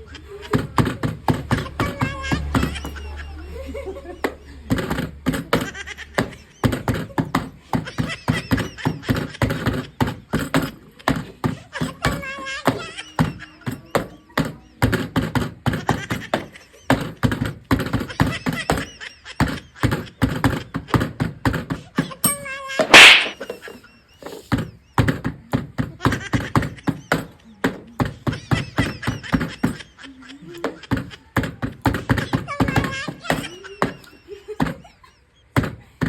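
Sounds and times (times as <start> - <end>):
loud sharp burst: 22.8 - 23.4.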